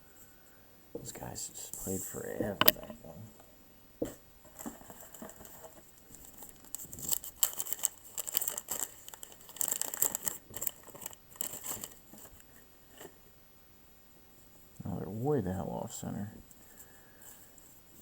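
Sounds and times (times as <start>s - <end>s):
wax-paper wrapper crinkling and tearing: 4.4s - 13.2s.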